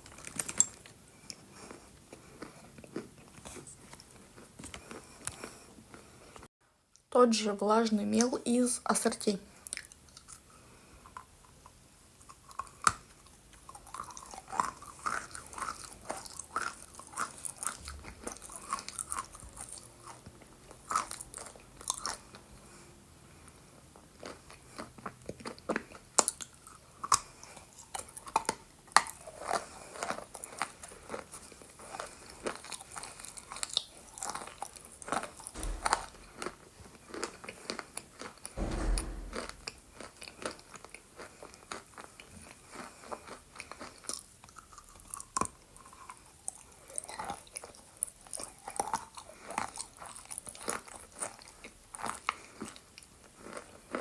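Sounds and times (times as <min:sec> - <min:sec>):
chalk crunching and chewing: 0:12.2 - 0:22.4, 0:23.9 - 0:35.6, 0:41.2 - 0:54.0
low thuds: 0:35.6 - 0:36.5, 0:38.6 - 0:39.9.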